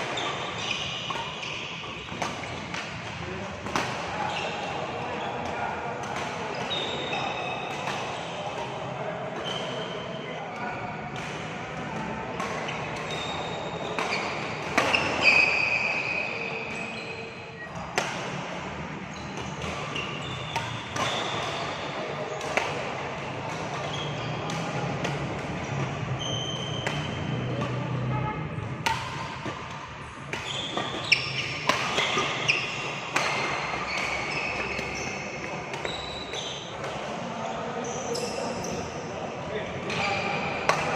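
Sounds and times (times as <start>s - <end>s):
shoes squeaking on court floor: 0.0s - 3.0s, 4.2s - 5.5s, 6.5s - 8.8s, 12.0s - 18.4s, 19.1s - 28.1s, 30.3s - 39.0s
racket striking shuttlecock: 0.0s - 4.0s, 19.3s - 28.0s, 28.7s - 37.1s.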